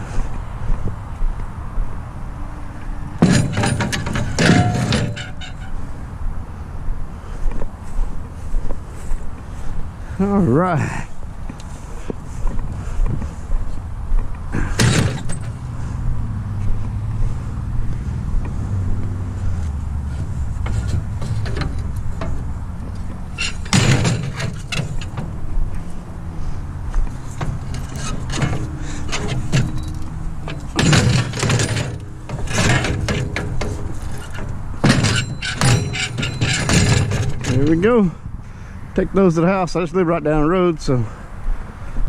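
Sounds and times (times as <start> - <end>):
loud knocks: 3.2 - 5.3
aluminum scrap clattering: 3.2 - 5.7, 20.2 - 22.5, 23.4 - 25.3, 27.3 - 37.8
low engine hum: 5.8 - 23.8.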